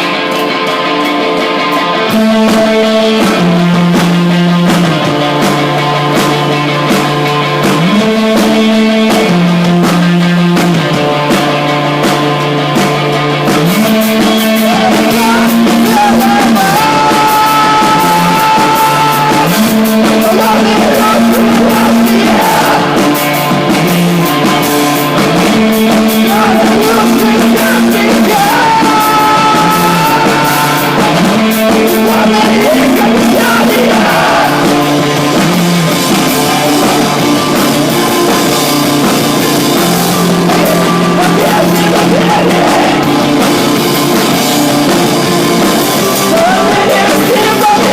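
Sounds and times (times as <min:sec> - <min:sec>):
bass guitar line: 0:00.0 - 0:47.9
electric guitars: 0:00.0 - 0:47.9
person singing: 0:13.6 - 0:47.9.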